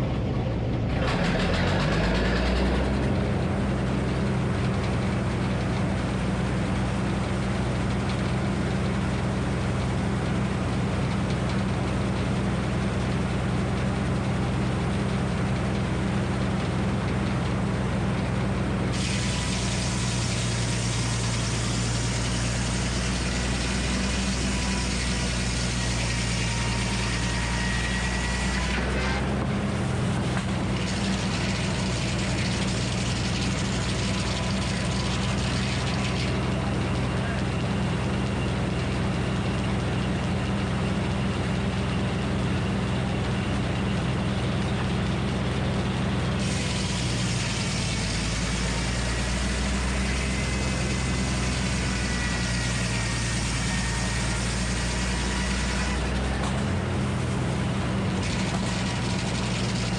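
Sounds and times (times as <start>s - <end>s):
engine running steadily: 0.0s - 59.9s
saw blade hissing: 19.0s - 28.5s.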